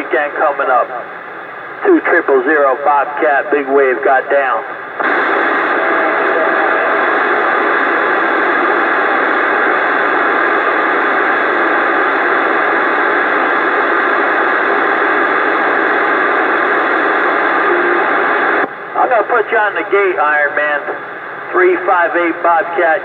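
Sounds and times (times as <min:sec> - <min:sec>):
radio static hiss: 0:00.0 - 0:23.0.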